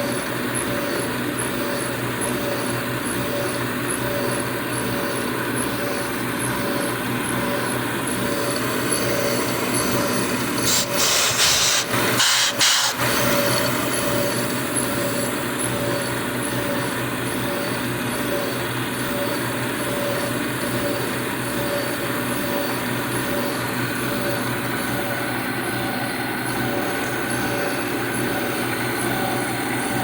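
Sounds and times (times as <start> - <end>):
milling machine running: 0.0 - 30.0
loud hiss: 10.7 - 13.3.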